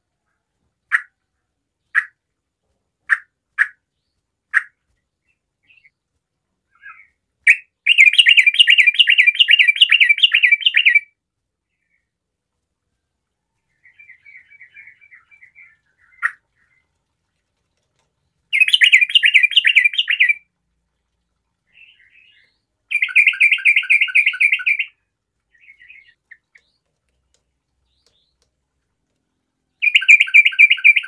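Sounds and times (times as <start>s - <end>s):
bulbul sharp calls: 3.0s - 3.8s, 4.5s - 4.8s, 13.8s - 16.8s, 18.5s - 20.4s, 21.7s - 26.8s, 29.8s - 31.0s.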